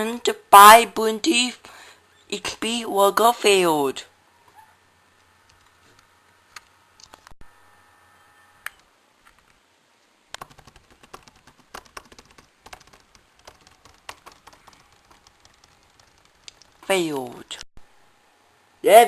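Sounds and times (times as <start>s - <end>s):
laptop keyboard typing: 10.3s - 16.9s.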